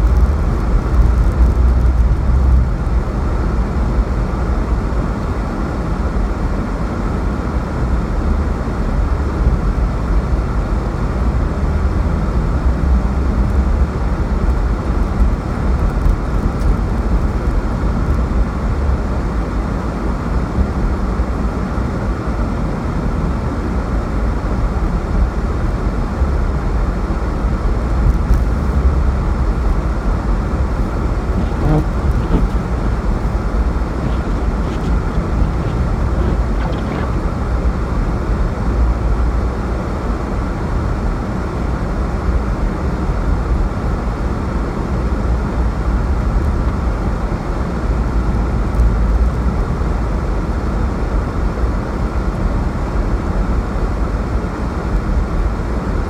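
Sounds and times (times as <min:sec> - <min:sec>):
wind blowing across microphone: 0:27.6 - 0:39.1.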